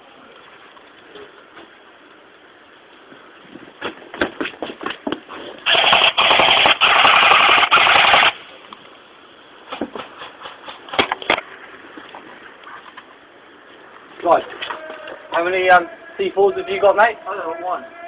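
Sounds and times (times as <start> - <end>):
airsoft gun full-auto burst: 5.7 - 8.4
airsoft gun single shots: 5.7 - 8.4.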